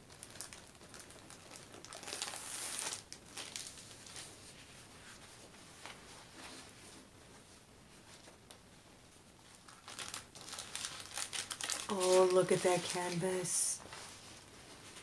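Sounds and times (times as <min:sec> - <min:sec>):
plastic packaging crinkling: 0:00.0 - 0:04.3, 0:09.4 - 0:14.0.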